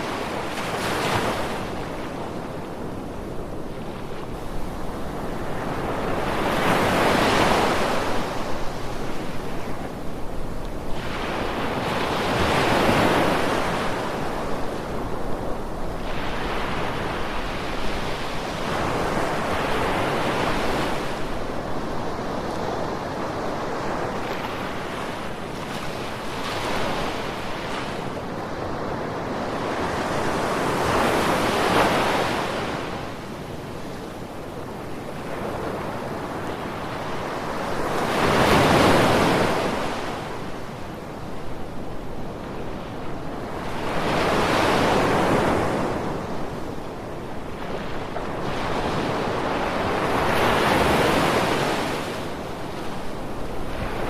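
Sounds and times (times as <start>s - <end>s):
ocean waves breaking on shore: 0.0s - 54.0s.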